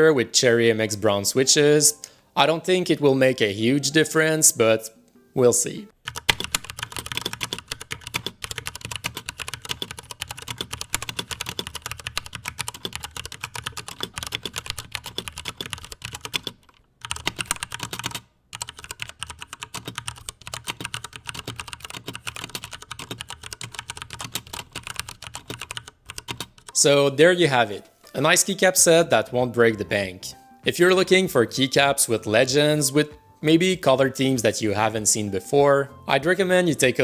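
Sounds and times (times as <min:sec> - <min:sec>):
mechanical keyboard typing: 0:06.0 - 0:26.8.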